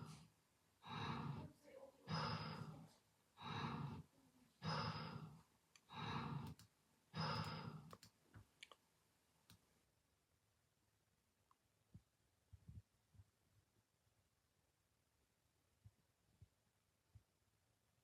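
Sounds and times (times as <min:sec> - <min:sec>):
person snoring: 0:00.0 - 0:06.6, 0:07.2 - 0:08.0
faint clicks: 0:05.7 - 0:08.8.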